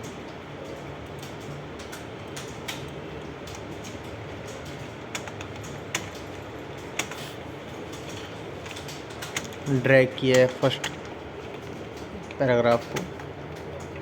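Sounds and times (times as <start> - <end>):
keyboard keys clicking: 0.0 - 7.3, 7.9 - 14.0
low background hum: 0.0 - 14.0.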